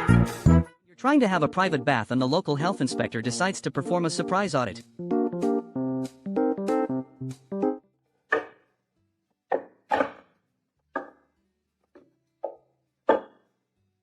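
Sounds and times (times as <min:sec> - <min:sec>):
piano music: 0:01.4 - 0:07.8.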